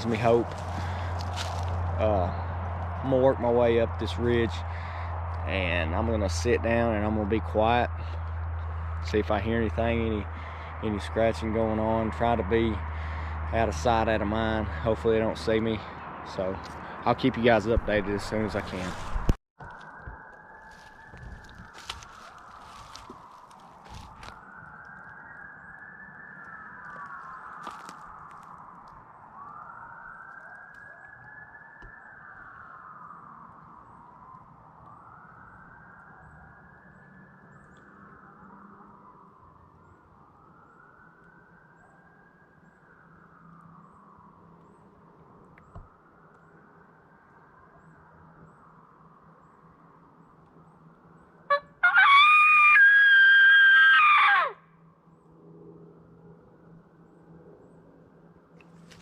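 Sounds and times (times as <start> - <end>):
faint ambulance siren wailing: 0.0 - 59.0
coyote howler call: 51.5 - 54.8.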